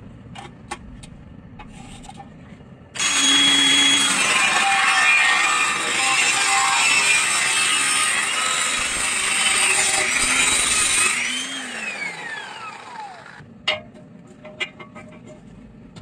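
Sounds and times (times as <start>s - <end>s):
angle grinder on metal: 3.0s - 13.4s
grinder disc spinning down: 3.0s - 13.4s.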